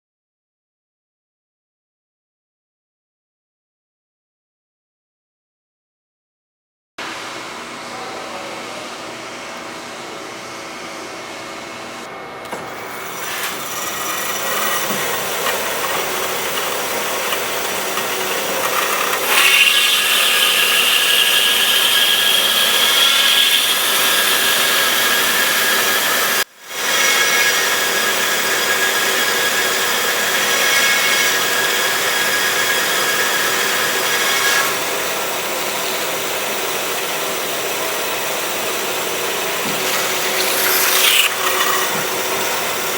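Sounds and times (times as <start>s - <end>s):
band saw cutting metal: 12.7s - 42.9s.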